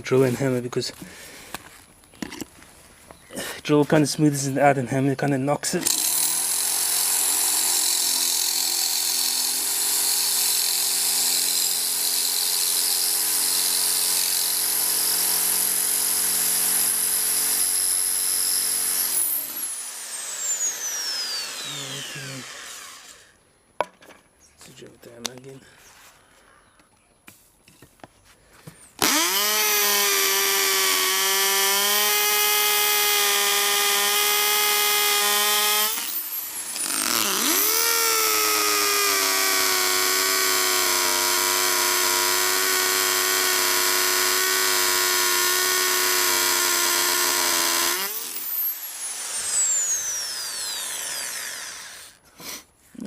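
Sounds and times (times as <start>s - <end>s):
electric drill whining: 5.8s - 23.4s, 29.0s - 52.2s.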